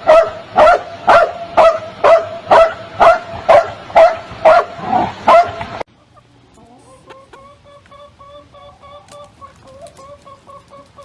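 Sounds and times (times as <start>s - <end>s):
dog barking: 0.0s - 5.6s.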